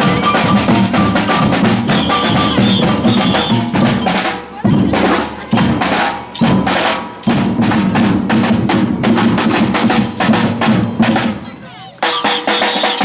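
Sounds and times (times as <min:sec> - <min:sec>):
hand percussion strokes: 0:00.0 - 0:13.0
samba percussion group: 0:00.0 - 0:13.0
snare drums: 0:00.0 - 0:13.0.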